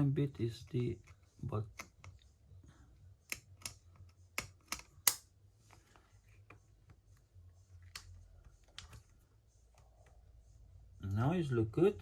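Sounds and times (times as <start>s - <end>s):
smartphone and tools clicking: 3.2s - 5.3s.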